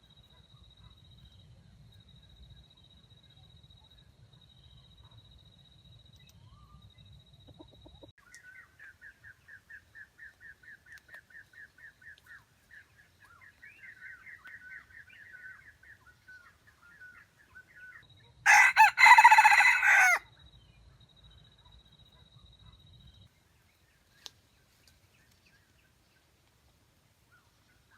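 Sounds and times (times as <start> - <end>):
rooster crowing: 18.5 - 20.2.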